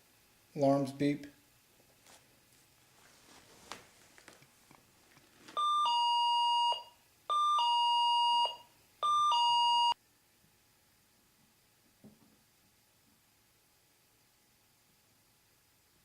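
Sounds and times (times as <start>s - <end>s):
two-tone alarm chime: 5.6s - 10.0s.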